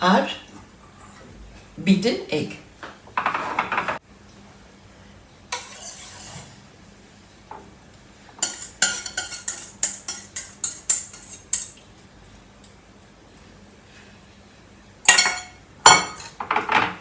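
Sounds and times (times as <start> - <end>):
spoon scraping a dish: 5.6 - 6.6, 8.4 - 11.8.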